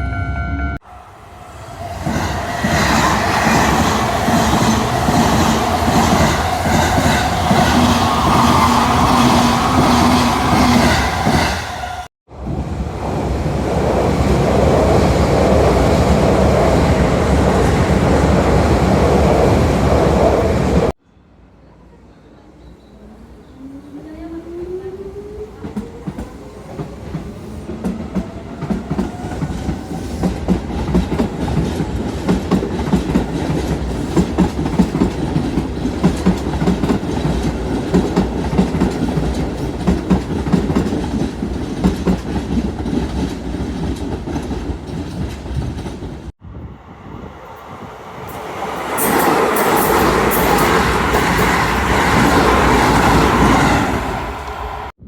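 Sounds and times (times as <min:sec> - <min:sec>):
train wheels clattering over rail joints: 0:28.6 - 0:46.3.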